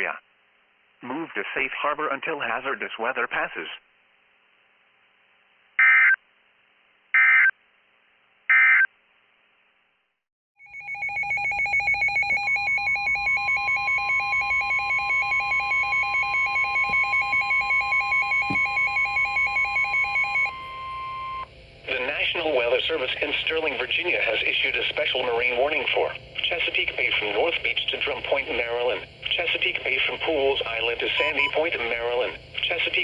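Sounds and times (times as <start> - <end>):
electronic warble alarm: 10.6 - 21.5, 31.1 - 31.8
screeching digital data tones: 31.1 - 31.8
steady alert tone: 31.2 - 31.6.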